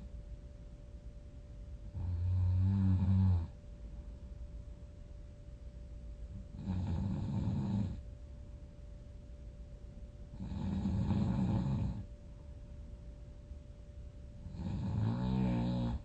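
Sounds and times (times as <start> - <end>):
loud snoring: 2.0 - 3.6, 6.5 - 8.0, 10.4 - 12.0, 14.4 - 16.0.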